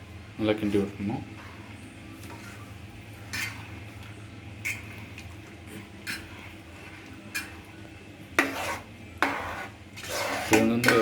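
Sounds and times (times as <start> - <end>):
spoon scraping a pot: 2.2 - 4.0, 4.6 - 11.0.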